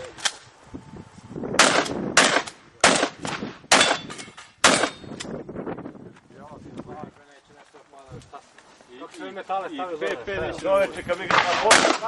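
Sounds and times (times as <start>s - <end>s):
shotgun shots with echo: 1.6s - 5.0s, 11.3s - 12.0s.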